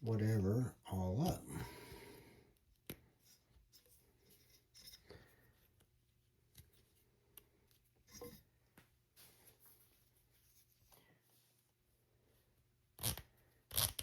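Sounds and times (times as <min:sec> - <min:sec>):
strap wrench clicking and rubbing: 0:13.0 - 0:14.0.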